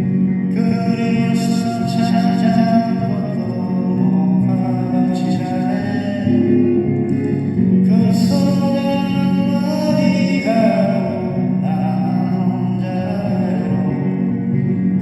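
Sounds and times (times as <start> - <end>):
pop song with held vocal notes: 0.0 - 15.0.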